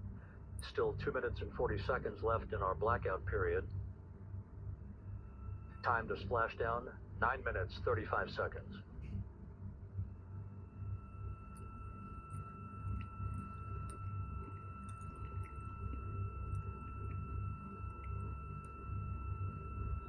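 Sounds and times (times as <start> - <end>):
low rumble: 9.0 - 20.0.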